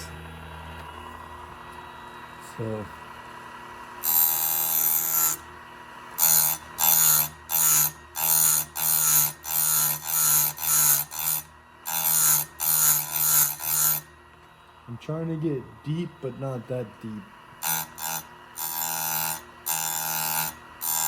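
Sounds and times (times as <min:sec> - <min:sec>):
grinder motor running: 0:02.5 - 0:14.1, 0:15.9 - 0:21.0
grinder wheel grinding metal: 0:04.0 - 0:05.5, 0:06.1 - 0:14.1, 0:17.6 - 0:21.0.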